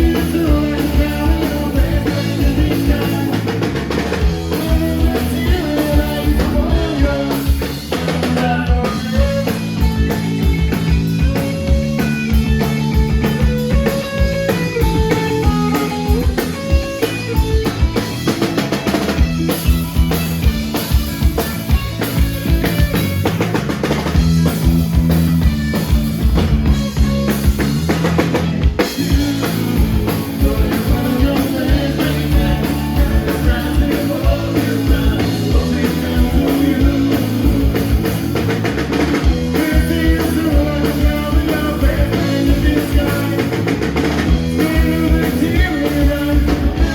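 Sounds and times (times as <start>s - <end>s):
rock band playing live: 0.0s - 46.9s.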